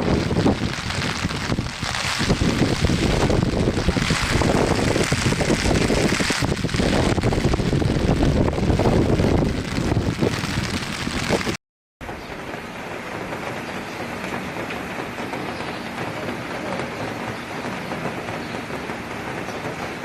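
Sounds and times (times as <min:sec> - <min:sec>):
wind buffeting microphone: 0:00.0 - 0:11.6
heavy rain: 0:00.0 - 0:20.0
rushing floodwater: 0:00.0 - 0:20.0
steady rain hiss: 0:00.0 - 0:20.0.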